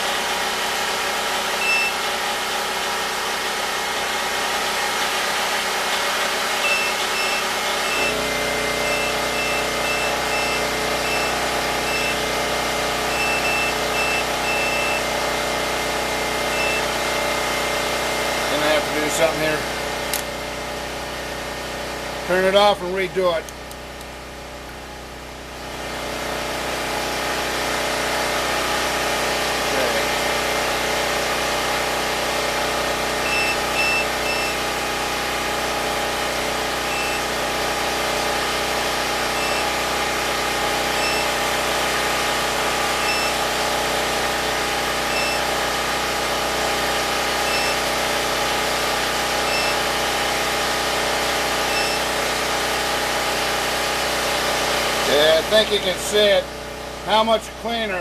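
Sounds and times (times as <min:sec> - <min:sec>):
generator engine running: 0:00.0 - 0:58.0
short high electronic beeps: 0:01.6 - 0:02.0, 0:06.6 - 0:12.3, 0:13.1 - 0:15.1, 0:16.5 - 0:16.9, 0:33.2 - 0:34.6, 0:36.9 - 0:37.3, 0:39.3 - 0:39.8, 0:40.9 - 0:41.4, 0:43.0 - 0:43.4, 0:45.1 - 0:45.5, 0:47.4 - 0:47.9, 0:49.5 - 0:49.8, 0:51.6 - 0:52.1.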